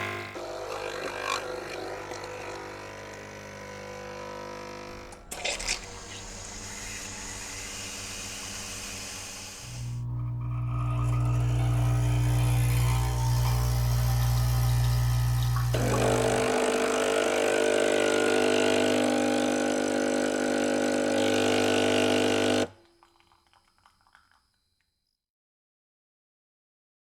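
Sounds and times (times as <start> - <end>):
coffee machine drone: 0.0 - 22.8.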